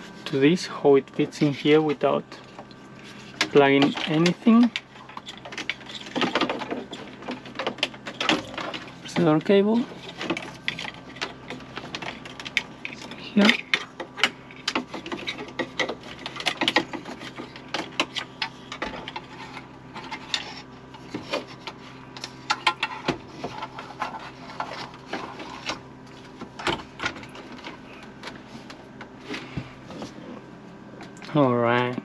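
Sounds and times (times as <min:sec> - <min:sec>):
plastic clicks knocks and scraping: 0:10.1 - 0:25.8.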